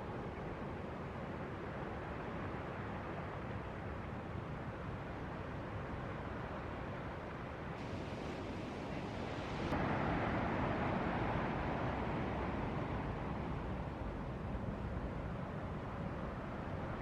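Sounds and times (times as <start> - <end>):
ocean surf: 7.8 - 14.7.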